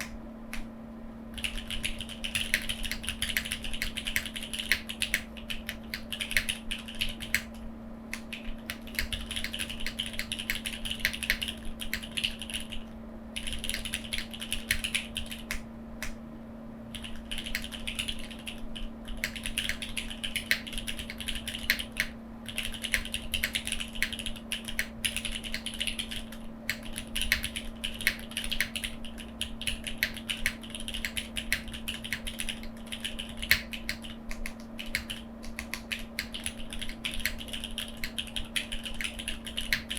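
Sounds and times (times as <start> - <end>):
mechanical keyboard typing: 1.4 - 7.6, 8.2 - 12.8, 13.4 - 15.6, 16.9 - 39.9.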